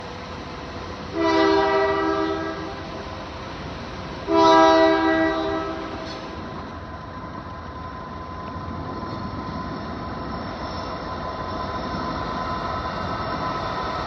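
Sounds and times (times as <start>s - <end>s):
locomotive air horn blasts: 1.1s - 2.8s, 4.3s - 6.2s.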